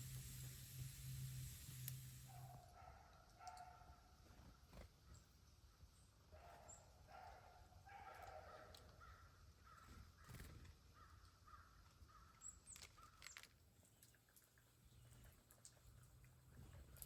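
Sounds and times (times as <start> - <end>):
small birds chirping: 8.8 - 17.0.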